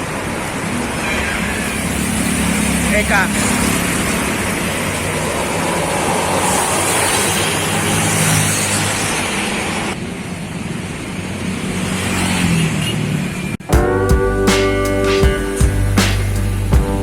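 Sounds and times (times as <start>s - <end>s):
road and tyre noise: 0.0s - 13.7s.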